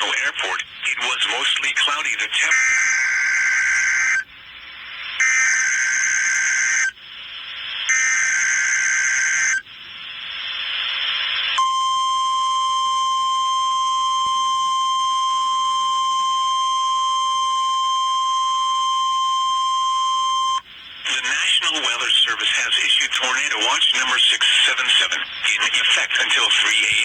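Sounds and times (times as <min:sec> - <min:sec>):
radio hiss: 0:00.0 - 0:02.7, 0:20.6 - 0:27.0
steady warning alarm tone: 0:00.0 - 0:27.0
data bursts: 0:20.2 - 0:27.0.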